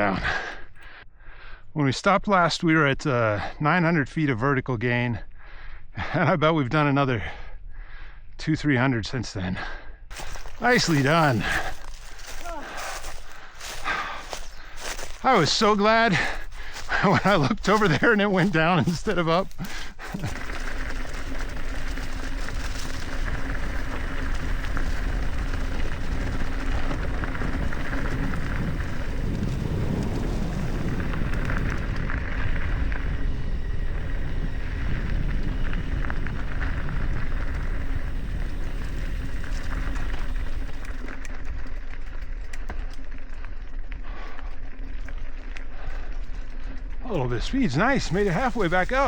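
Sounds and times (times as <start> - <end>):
wind rushing over microphone: 10.1 - 40.8
bicycle tyres on gravel: 10.1 - 49.0.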